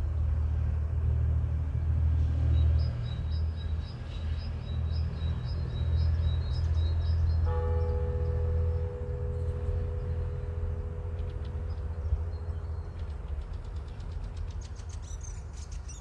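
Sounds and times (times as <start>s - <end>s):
road traffic rumble: 0.0s - 16.0s
church bell ringing: 6.8s - 15.4s.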